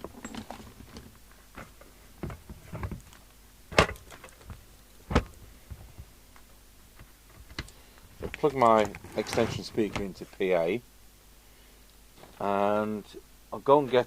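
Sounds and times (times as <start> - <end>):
equipment clunking on a workbench: 3.7 - 5.9.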